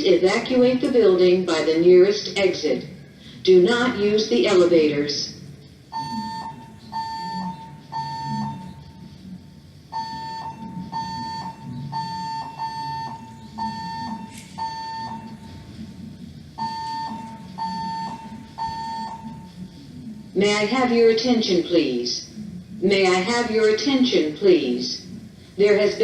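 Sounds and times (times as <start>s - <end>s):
fire alarm evacuation beeps: 5.8s - 9.2s, 9.8s - 15.8s, 16.5s - 19.6s.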